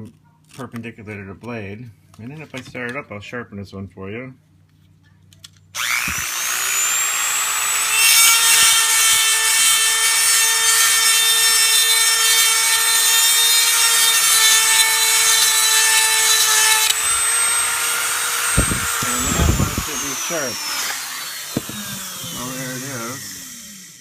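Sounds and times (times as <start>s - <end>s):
rotary tool motor whining: 5.8s - 24.0s
grinding stone on metal: 7.8s - 23.5s.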